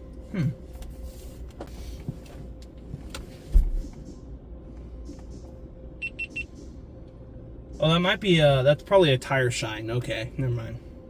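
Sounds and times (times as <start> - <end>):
car wash machinery hum: 0.0 - 11.0
short high beeps: 6.0 - 6.5.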